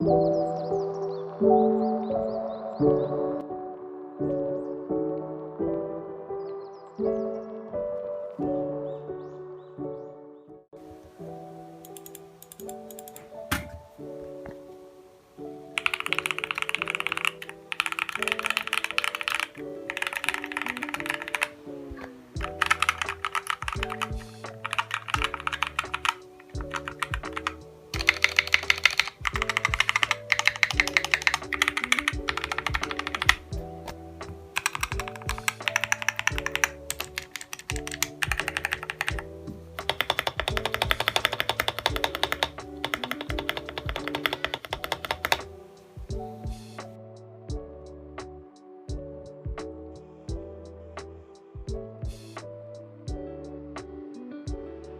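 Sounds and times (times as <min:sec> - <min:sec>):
background music: 0:00.0 - 0:54.9
keyboard key clicks: 0:34.6 - 0:39.2, 0:39.8 - 0:45.4.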